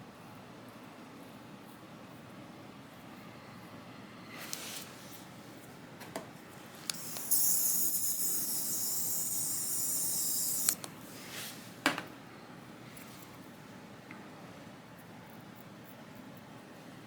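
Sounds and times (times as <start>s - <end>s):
high hiss of spray: 7.0s - 10.8s.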